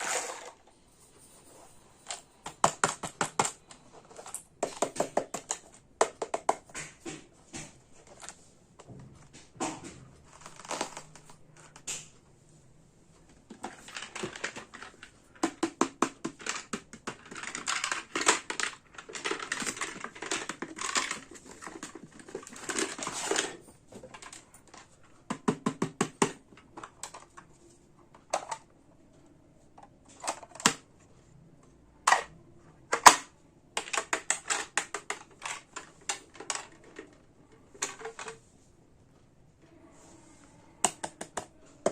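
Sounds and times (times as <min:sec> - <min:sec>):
plastic toy pieces clicking: 0:13.6 - 0:23.4, 0:32.9 - 0:37.2.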